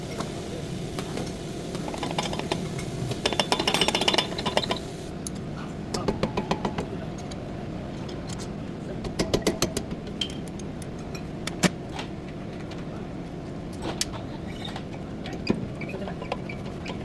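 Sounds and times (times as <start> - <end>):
steady low hum: 0.0 - 9.0
rapid metallic knocks: 1.8 - 5.1
metal tools clinking: 1.9 - 5.1.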